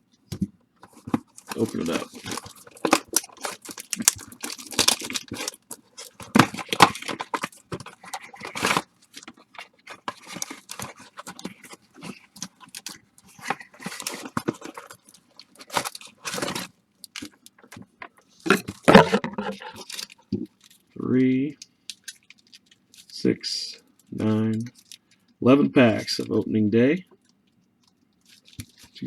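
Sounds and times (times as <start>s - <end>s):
plastic wrapping crinkling: 0.3s - 20.9s, 21.9s - 23.2s, 24.6s - 25.2s, 28.2s - 29.0s
cardboard box tearing: 1.0s - 15.0s, 15.6s - 16.7s.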